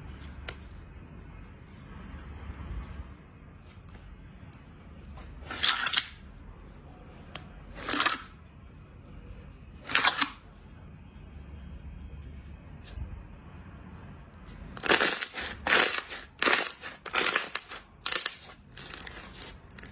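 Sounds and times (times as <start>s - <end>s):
slime squishing and crackling: 7.6s - 8.4s, 9.8s - 10.4s, 14.8s - 19.9s.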